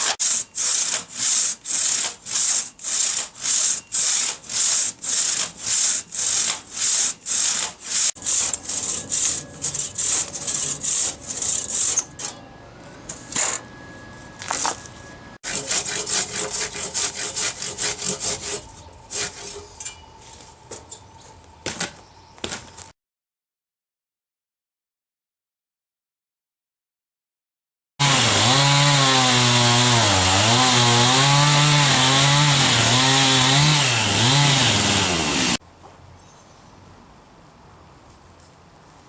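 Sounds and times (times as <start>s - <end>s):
hand saw cutting wood: 0.0s - 12.4s, 15.4s - 20.5s, 28.0s - 35.6s.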